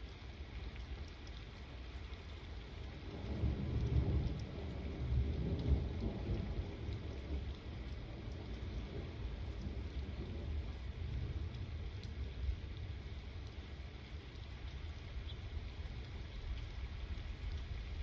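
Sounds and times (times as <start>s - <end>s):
steady rain falling: 0.0s - 18.0s
thunder rumbling: 3.2s - 11.5s.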